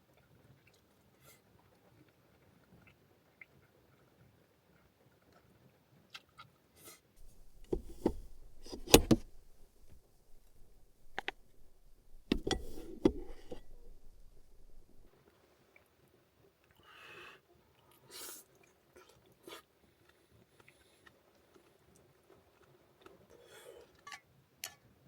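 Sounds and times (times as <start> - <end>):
tableware clicking and knocking: 7.2 - 15.1.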